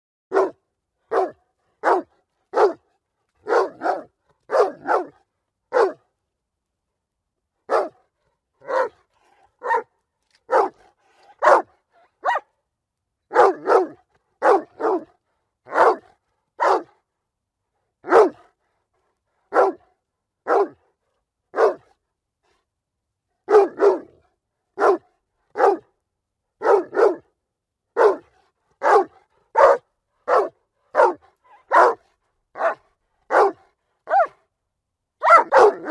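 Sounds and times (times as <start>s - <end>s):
dog barking: 0.3s - 6.0s, 7.7s - 12.6s, 13.3s - 17.0s, 18.0s - 18.6s, 19.5s - 20.9s, 21.5s - 22.0s, 23.4s - 24.2s, 24.8s - 25.9s, 26.6s - 27.3s, 28.0s - 34.4s, 35.2s - 35.9s.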